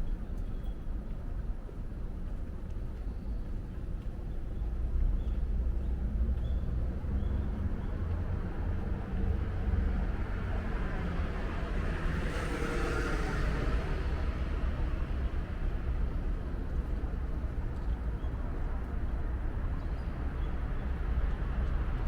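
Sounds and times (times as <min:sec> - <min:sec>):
street traffic rumble: 0:00.0 - 0:22.0
vehicle passing close by: 0:10.3 - 0:15.4.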